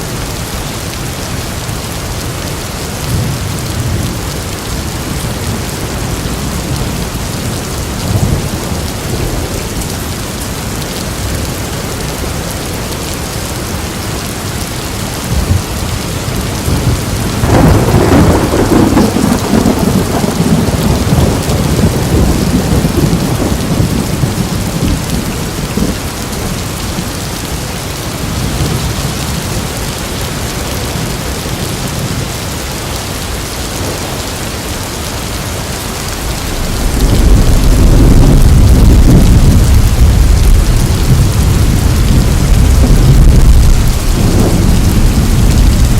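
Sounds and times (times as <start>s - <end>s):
steady rain: 0.0s - 45.9s
thunder clap rumbling: 15.2s - 27.6s, 33.7s - 45.9s.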